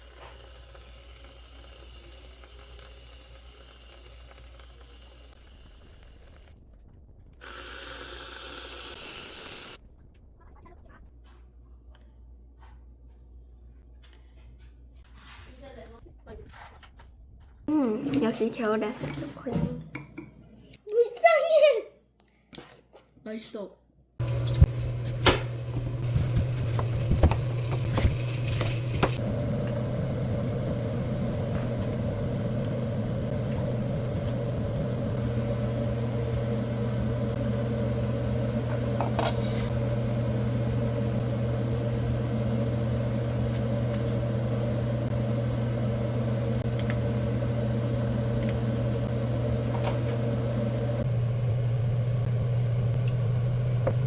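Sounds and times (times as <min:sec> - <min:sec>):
kitchen appliance humming: 0:00.0 - 0:06.6, 0:07.4 - 0:09.8, 0:24.2 - 0:54.0.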